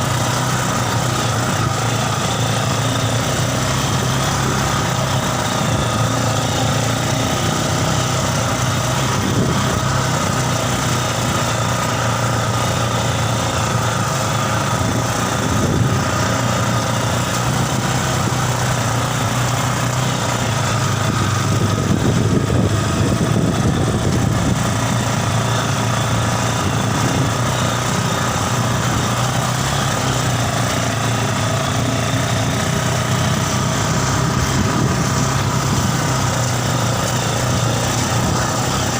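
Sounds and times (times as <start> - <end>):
single-cylinder engine running: 0.0 - 38.9.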